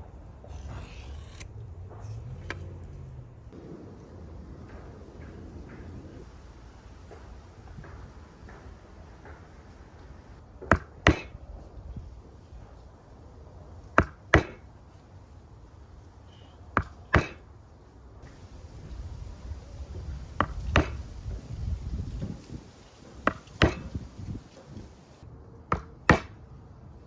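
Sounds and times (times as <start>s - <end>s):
hand tool striking wood: 10.6s - 11.4s, 14.0s - 14.6s, 16.8s - 17.4s, 20.4s - 21.1s, 23.0s - 25.2s.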